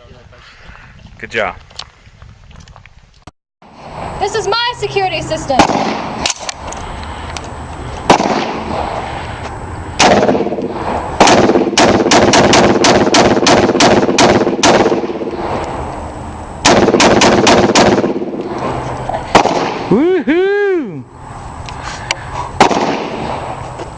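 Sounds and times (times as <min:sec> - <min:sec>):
rifle gunshots: 0:05.6 - 0:06.5, 0:08.1 - 0:08.9, 0:10.0 - 0:15.5, 0:16.6 - 0:18.5, 0:19.3 - 0:19.9, 0:22.6 - 0:23.5.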